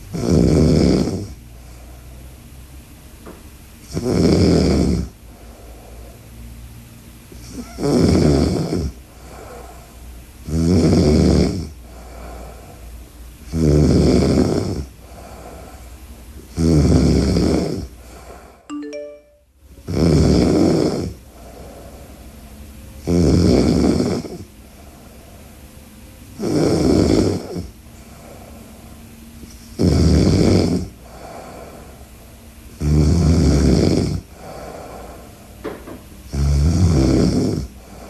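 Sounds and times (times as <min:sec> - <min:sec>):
woman snoring loudly: 0:00.1 - 0:01.4, 0:03.9 - 0:05.2, 0:07.5 - 0:09.6, 0:10.5 - 0:11.8, 0:13.5 - 0:15.3, 0:16.5 - 0:17.9, 0:19.9 - 0:21.2, 0:23.0 - 0:24.5, 0:26.4 - 0:27.7, 0:29.8 - 0:31.8, 0:32.8 - 0:35.0, 0:36.3 - 0:38.0
quiet breathing: 0:01.3 - 0:02.4, 0:05.0 - 0:06.6, 0:08.9 - 0:10.4, 0:11.6 - 0:13.4, 0:14.4 - 0:16.5, 0:21.1 - 0:22.9, 0:24.2 - 0:26.0, 0:27.3 - 0:29.8, 0:30.8 - 0:32.6, 0:34.2 - 0:35.6, 0:37.6 - 0:38.0
short rising chime: 0:18.7 - 0:19.5.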